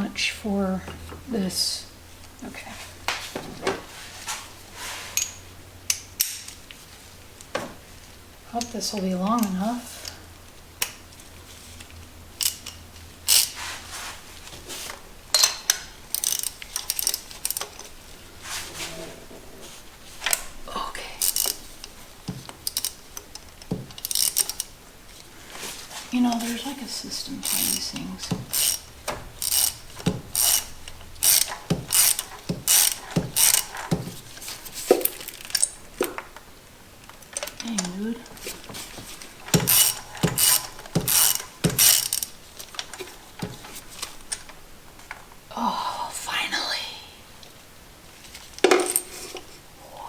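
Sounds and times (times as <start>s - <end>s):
ratchet wrench clicking: 12.4s - 13.6s, 15.4s - 17.7s, 21.2s - 24.7s, 27.4s - 34.4s, 39.4s - 43.0s.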